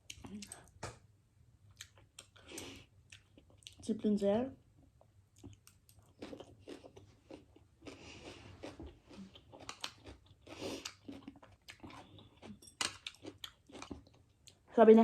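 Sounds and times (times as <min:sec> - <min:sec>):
person chewing noodles: 0:01.7 - 0:03.8, 0:05.3 - 0:14.6.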